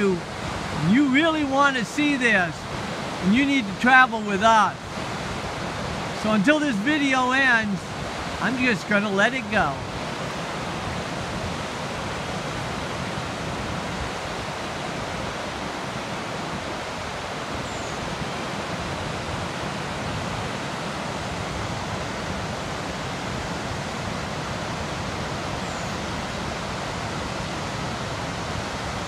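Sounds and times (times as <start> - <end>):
waterfall rushing: 0.0 - 29.0.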